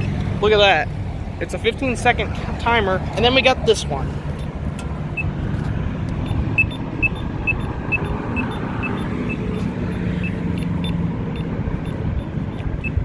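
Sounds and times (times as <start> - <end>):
traffic noise: 0.0 - 13.0
crossing button short high beeps: 6.2 - 13.0.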